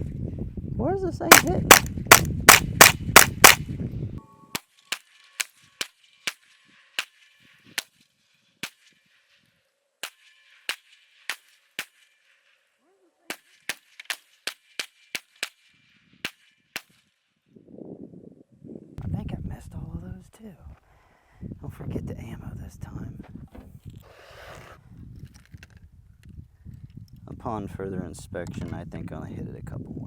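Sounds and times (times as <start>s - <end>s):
gunshots: 1.3s - 3.6s.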